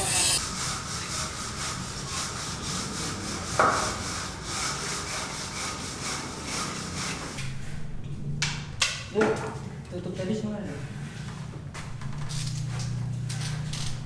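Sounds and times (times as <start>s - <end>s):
rhythmic scraping strokes: 0.0s - 0.4s.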